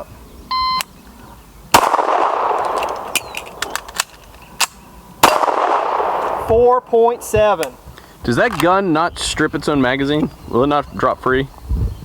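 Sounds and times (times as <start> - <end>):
handgun shots with echo: 1.7 - 7.8
metallic clicks of reloading: 2.6 - 4.8.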